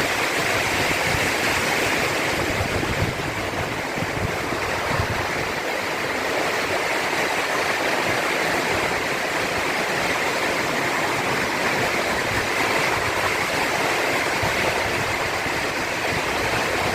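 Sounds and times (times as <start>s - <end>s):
heavy rain: 0.0s - 16.9s.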